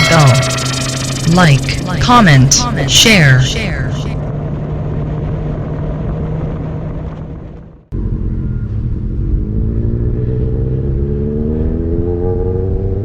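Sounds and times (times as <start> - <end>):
motorcycle engine accelerating: 8.0 - 13.0.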